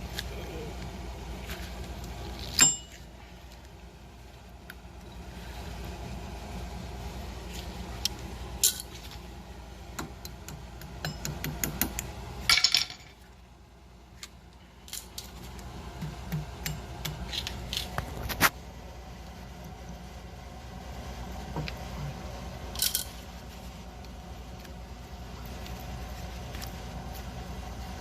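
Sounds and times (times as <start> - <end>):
metal tools clinking and scraping: 2.4 - 3.1, 8.6 - 9.2, 22.7 - 23.2.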